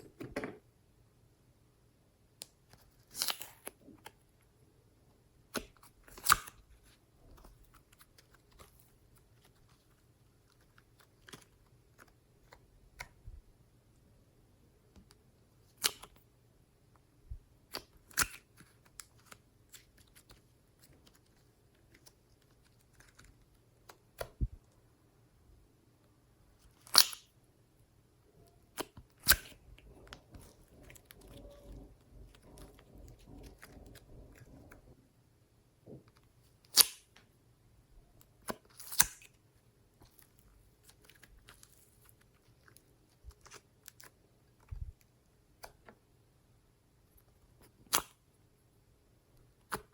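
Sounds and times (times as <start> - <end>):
slime sticky pops and clicks: 26.9 - 27.2
slime soft squishing: 27.8 - 35.1, 38.1 - 46.1.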